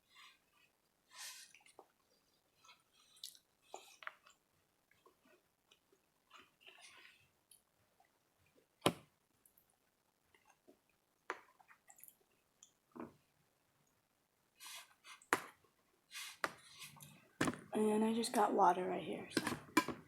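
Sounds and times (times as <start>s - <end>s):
eating sounds with sharp clicks: 3.1s - 4.4s.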